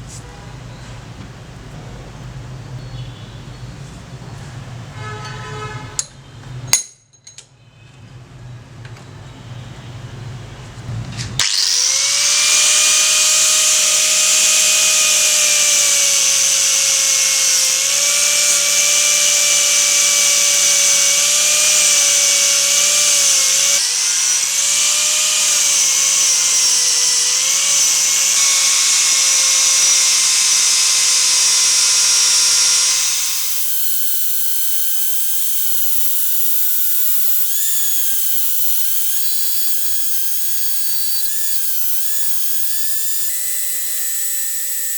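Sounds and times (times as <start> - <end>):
electric power tool whining: 11.4 - 44.9.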